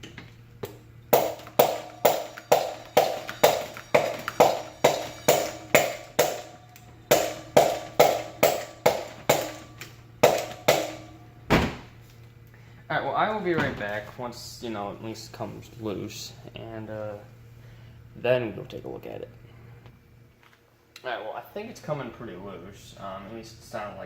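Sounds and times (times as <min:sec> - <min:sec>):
hammer blows on metal: 0:01.2 - 0:11.2.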